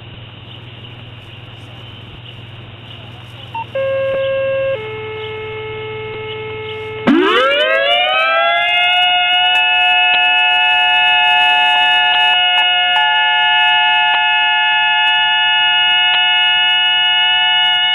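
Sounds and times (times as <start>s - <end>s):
low hum with hiss: 0.0s - 17.9s
held electronic tones: 3.5s - 17.9s
civil defense siren wailing: 3.6s - 17.9s.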